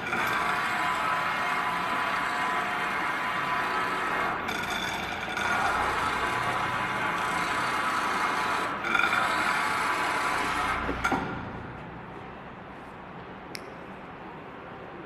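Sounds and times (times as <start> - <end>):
machine hissing and humming: 0.0 - 11.2.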